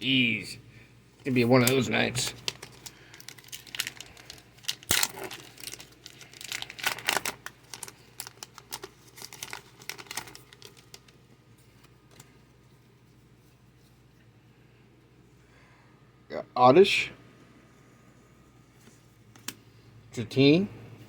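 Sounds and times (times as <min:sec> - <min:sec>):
foil wrapper tearing and crinkling: 0:01.6 - 0:11.2.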